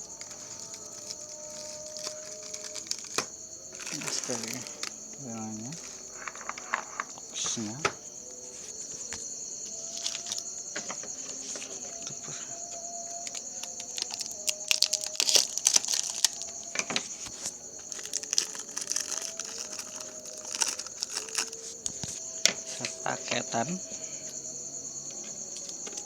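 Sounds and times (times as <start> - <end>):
packaging crinkling and tearing: 0.0 - 5.0, 9.8 - 10.4, 13.2 - 22.2
crickets chirping: 0.0 - 26.0.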